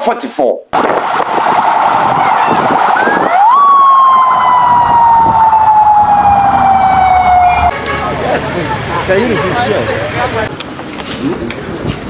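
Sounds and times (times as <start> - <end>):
siren wailing: 0.8 - 7.8.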